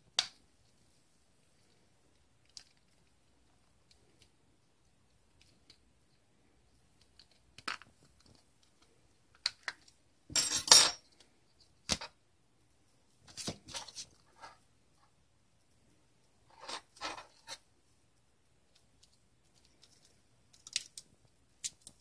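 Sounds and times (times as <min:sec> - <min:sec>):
small plastic parts clicking: 0:02.1 - 0:04.4, 0:18.7 - 0:22.0.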